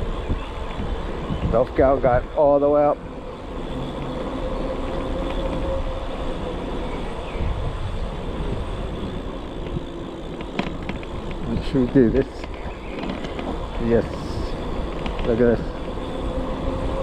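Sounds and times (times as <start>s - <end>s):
faint electric motor whine: 0.0s - 17.0s
low rumble of riding noise: 0.0s - 17.0s.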